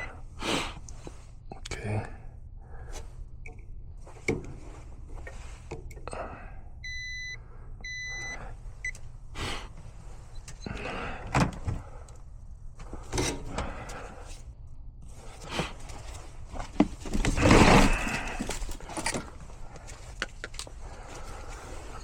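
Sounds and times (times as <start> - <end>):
electronic beeps: 6.8 - 9.0
hands working on equipment: 15.3 - 22.0.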